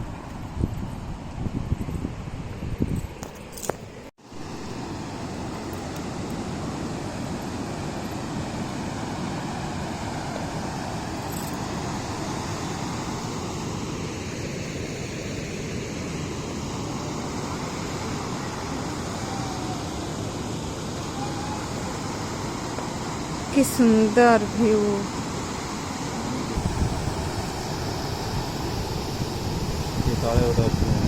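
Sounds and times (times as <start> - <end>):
waterfall rushing: 16.6 - 23.9.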